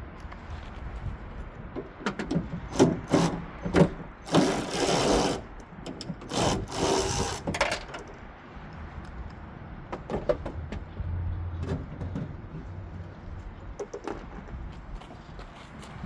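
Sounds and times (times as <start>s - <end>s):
socket ratchet ratcheting: 6.2s - 7.8s.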